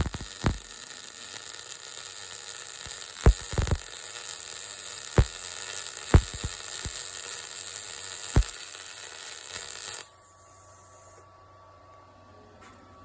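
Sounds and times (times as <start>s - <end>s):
spatter pops: 0.0s - 4.2s, 5.0s - 10.0s
welding arc crackling: 0.0s - 10.1s.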